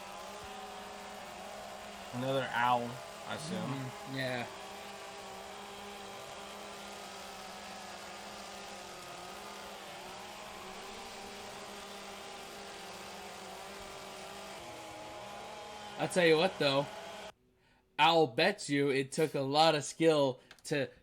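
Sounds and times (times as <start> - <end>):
chainsaws running: 0.0 - 17.4.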